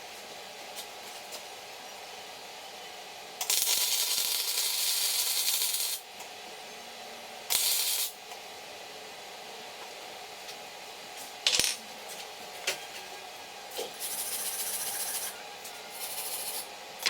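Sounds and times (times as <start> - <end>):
welding arc crackling: 3.4 - 6.1, 7.5 - 8.2.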